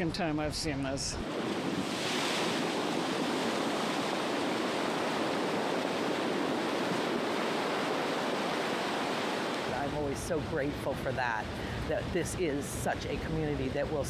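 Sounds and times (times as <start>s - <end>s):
waves breaking on shore: 1.2s - 14.0s.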